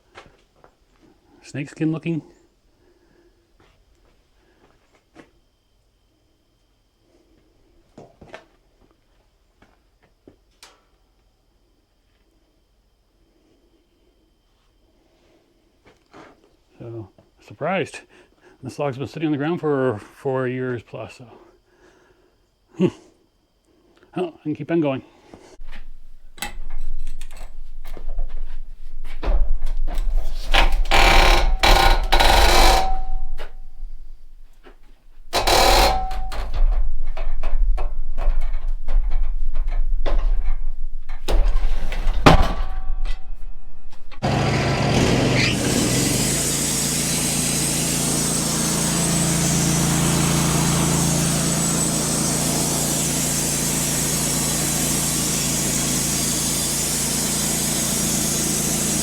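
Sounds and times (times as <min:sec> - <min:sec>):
band sawmill running: 0:25.6 - 0:59.0
knocks and clatter of work: 0:25.6 - 0:59.0.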